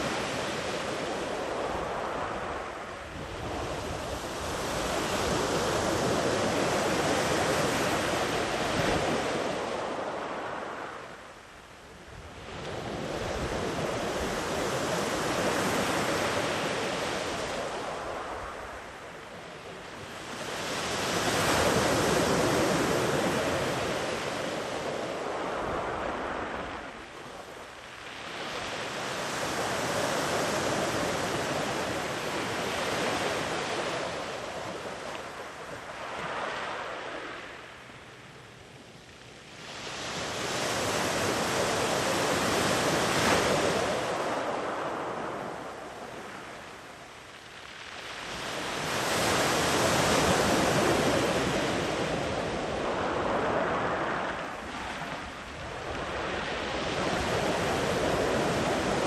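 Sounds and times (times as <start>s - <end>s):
sea waves breaking on beach: 39.6s - 59.0s.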